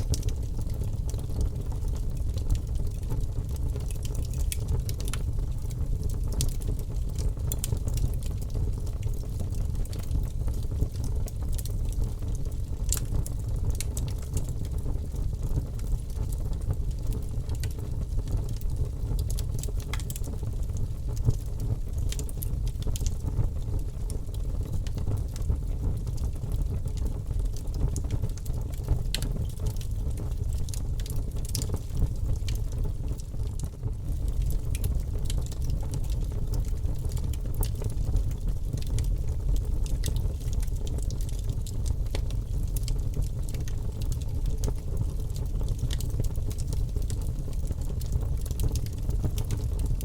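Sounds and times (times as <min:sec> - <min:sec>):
burning wood crackling and popping: 0:00.0 - 0:50.0.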